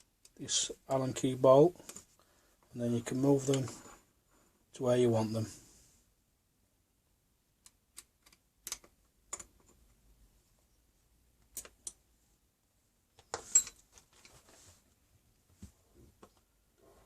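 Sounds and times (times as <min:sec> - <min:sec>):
metal parts clicking and knocking: 0:13.2 - 0:14.2.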